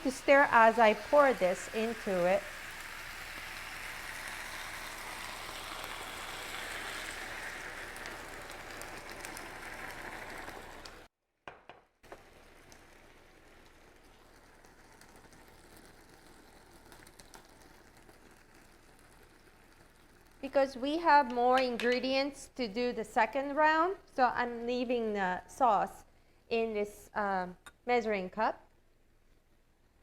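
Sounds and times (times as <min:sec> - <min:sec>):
food sizzling in a skillet: 0:00.0 - 0:11.1, 0:12.1 - 0:21.0.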